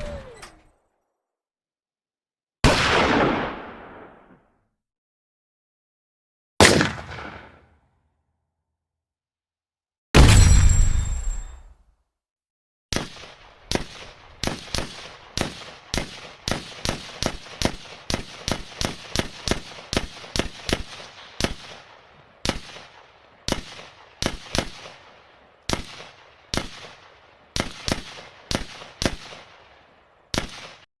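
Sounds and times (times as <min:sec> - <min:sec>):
gunshots with echo: 0:02.6 - 0:04.4, 0:06.6 - 0:07.7.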